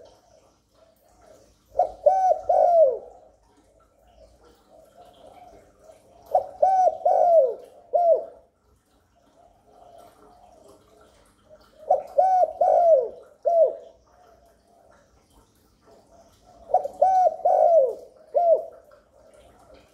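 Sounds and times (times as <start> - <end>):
dove cooing: 0.0 - 8.5, 11.4 - 15.0, 16.1 - 19.9.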